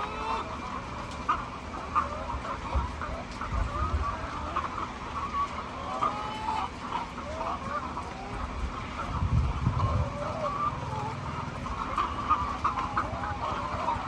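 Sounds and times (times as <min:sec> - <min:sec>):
hens clucking: 0:00.0 - 0:14.0.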